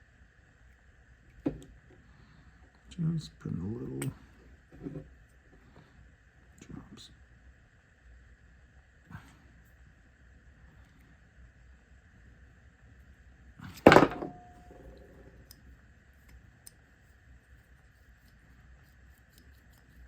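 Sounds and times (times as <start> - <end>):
metal tool clattering on hard surface: 13.8 - 14.7.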